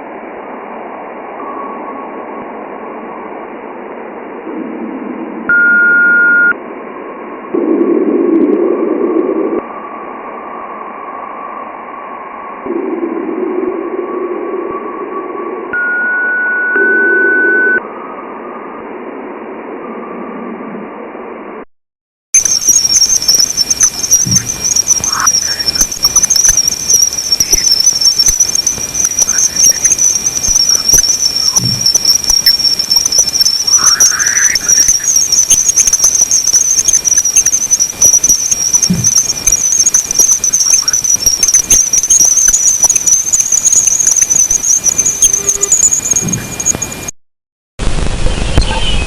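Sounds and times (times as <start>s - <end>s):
short rising chirps: 22.4s - 46.3s.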